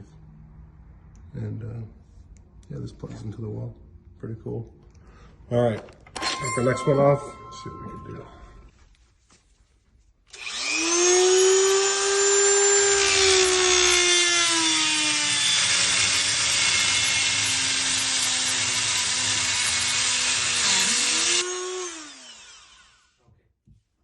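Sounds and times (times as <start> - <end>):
power drill whining: 10.3 - 23.2.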